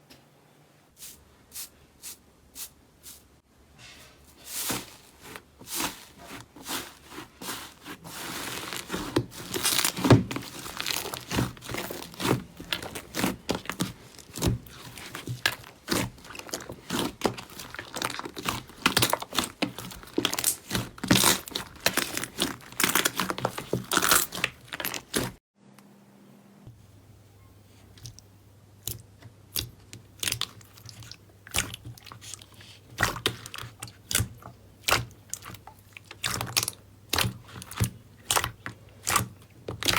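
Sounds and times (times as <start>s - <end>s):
slime crackling and popping: 6.7s - 25.4s, 33.0s - 39.9s.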